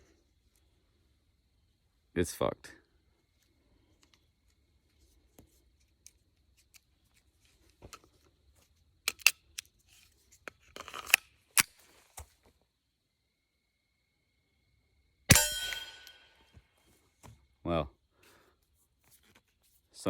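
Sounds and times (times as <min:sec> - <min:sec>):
metallic clicks of pistol handling: 0:09.0 - 0:09.8, 0:10.4 - 0:11.8.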